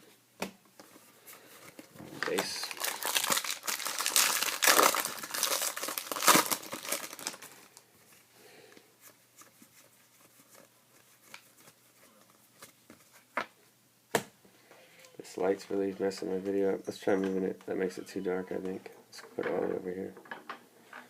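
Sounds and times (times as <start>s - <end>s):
wrapper crinkling and tearing: 2.1s - 7.8s.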